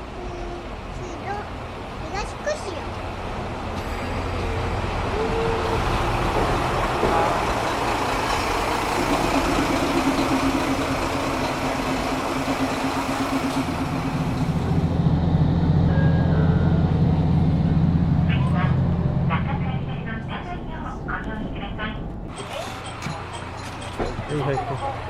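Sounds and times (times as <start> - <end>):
diesel engine running: 0.7 - 25.0
deep hum: 9.0 - 22.3.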